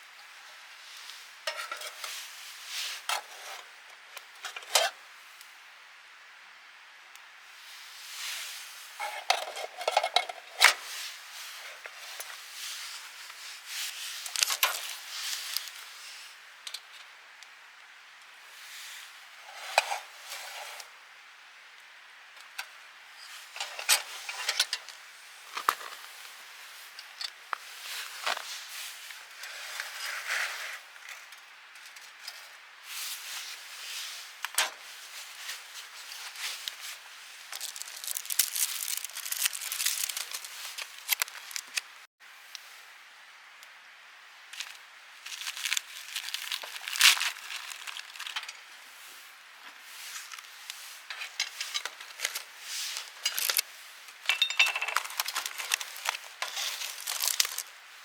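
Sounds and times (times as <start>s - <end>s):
cookware clinking and scraping: 1.5s - 2.2s, 9.0s - 10.8s, 54.3s - 55.3s.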